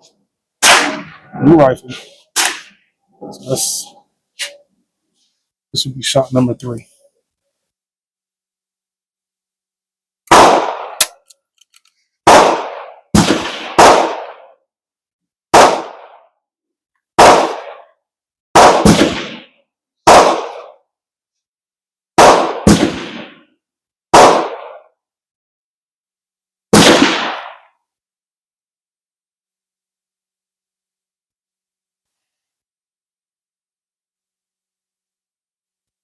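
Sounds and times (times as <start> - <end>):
gunshots with echo: 0.6 - 1.4, 10.3 - 11.0, 12.3 - 14.5, 15.6 - 16.2, 17.2 - 17.8, 18.6 - 19.5, 20.1 - 20.7, 22.2 - 23.4, 24.1 - 24.8, 26.8 - 27.6.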